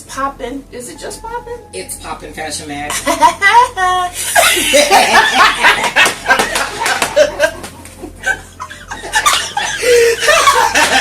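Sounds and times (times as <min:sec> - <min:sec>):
people laughing: 0:02.9 - 0:11.0.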